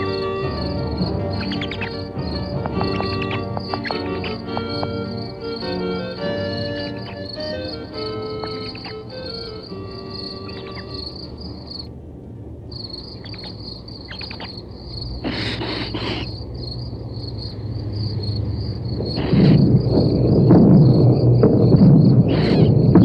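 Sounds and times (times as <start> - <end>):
loud low rumbling: 0.0 - 15.3, 16.3 - 23.0
crickets chirping: 0.0 - 23.0
short hissing bursts: 15.0 - 16.5.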